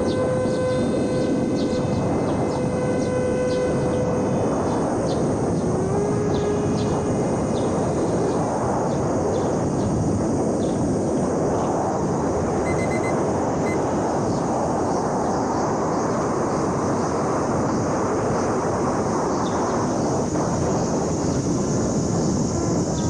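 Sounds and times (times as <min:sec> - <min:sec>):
wind buffeting microphone: 0:00.0 - 0:23.0.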